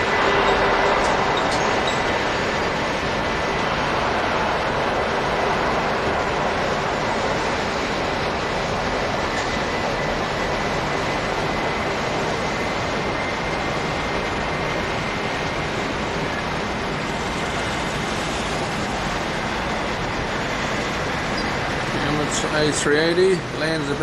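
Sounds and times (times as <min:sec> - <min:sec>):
faint high whine: 0:00.0 - 0:24.0
jet engines rushing: 0:00.0 - 0:24.0.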